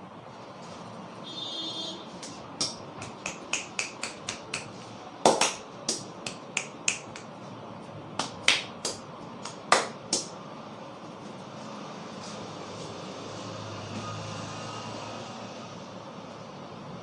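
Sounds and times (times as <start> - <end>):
steady background noise: 0.0 - 17.0
fingers snapping: 2.2 - 4.7, 5.3 - 7.3.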